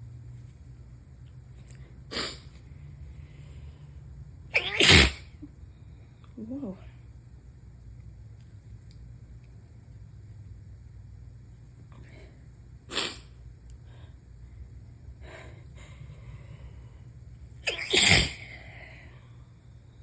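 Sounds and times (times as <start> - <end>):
faint breaths: 1.7 - 4.2, 13.8 - 17.3
person sneezing: 2.1 - 2.5, 4.6 - 5.4, 12.9 - 13.3, 17.6 - 18.7.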